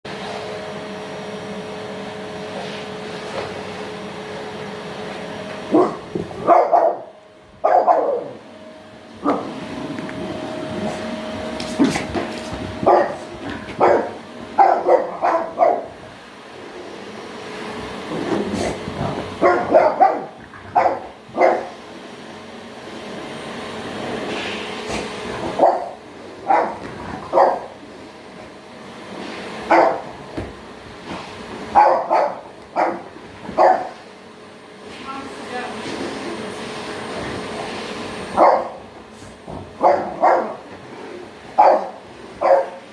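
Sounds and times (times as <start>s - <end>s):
vacuum cleaner motor humming: 0.1s - 42.9s
dog barking: 5.7s - 8.4s, 12.8s - 15.9s, 19.4s - 21.8s, 25.6s - 27.7s, 29.7s - 30.0s, 31.8s - 34.0s, 38.4s - 38.8s, 39.8s - 40.6s, 41.6s - 42.8s.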